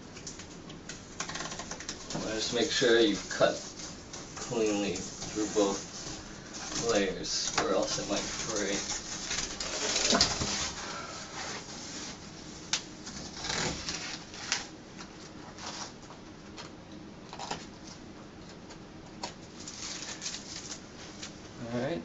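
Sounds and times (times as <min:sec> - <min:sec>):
rustles of fabric wallcovering: 0:02.1 - 0:14.6.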